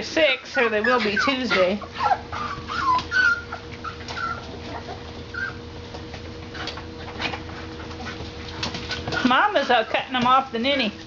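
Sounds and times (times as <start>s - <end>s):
puppies whimpering: 0.2s - 5.8s.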